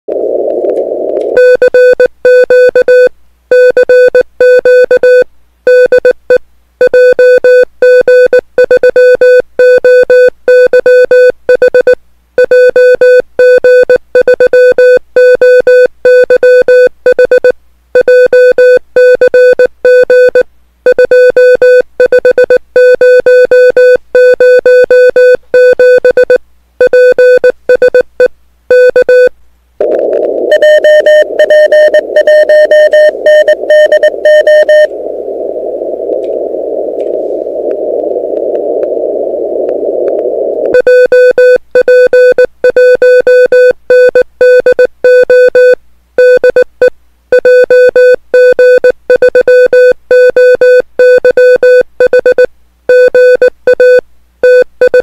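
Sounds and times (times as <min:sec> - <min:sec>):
radio receiver hiss: 0:00.1 - 0:01.6, 0:29.8 - 0:40.9
morse code tone: 0:28.7 - 0:46.6.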